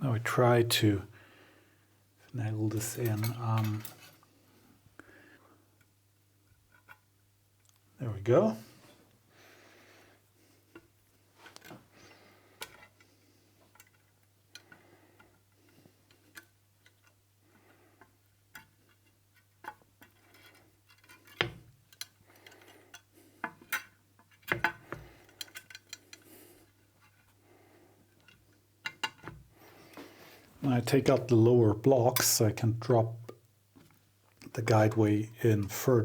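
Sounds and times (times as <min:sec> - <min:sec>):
light clicks and metal knocks: 0:02.7 - 0:04.2.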